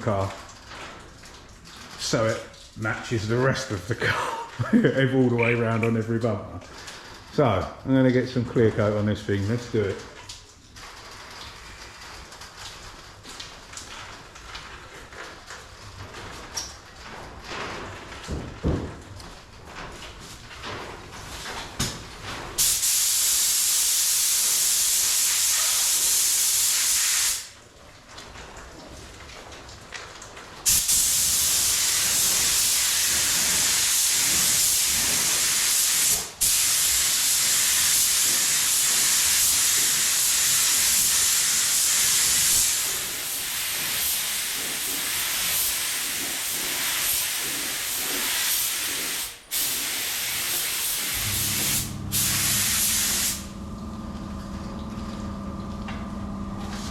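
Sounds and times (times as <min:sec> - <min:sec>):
paint spray gun hissing: 0:30.7 - 0:53.5.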